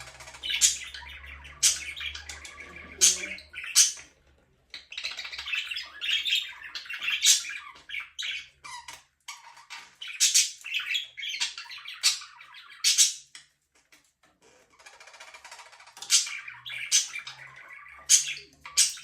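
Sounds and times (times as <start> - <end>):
budgerigars chattering and chirping: 0.0 - 13.5, 14.7 - 19.0.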